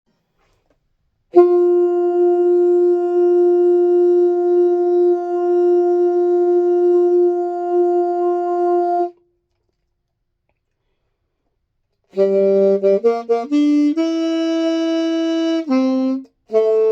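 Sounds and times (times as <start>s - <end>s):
wind instrument long note: 1.3s - 9.2s, 12.1s - 16.9s.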